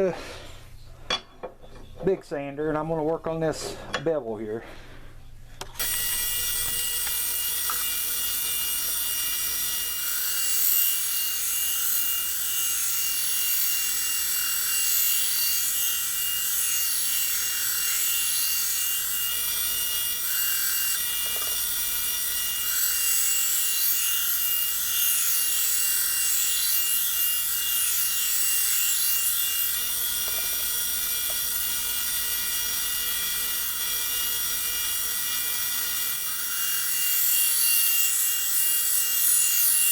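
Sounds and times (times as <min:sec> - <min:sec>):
belt sander motor whine: 0:05.8 - 0:39.9
blade grinding hiss: 0:05.8 - 0:39.9.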